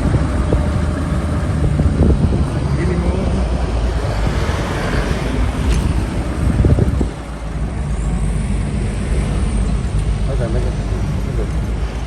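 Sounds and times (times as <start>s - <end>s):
engine running hard under load: 0.0s - 12.0s.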